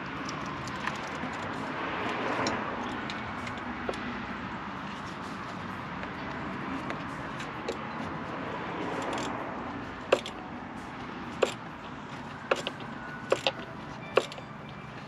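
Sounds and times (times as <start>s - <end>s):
steady background noise: 0.0s - 15.0s
metallic clicks of hand tools: 8.9s - 9.4s, 10.1s - 10.4s, 11.4s - 11.7s, 12.5s - 14.4s.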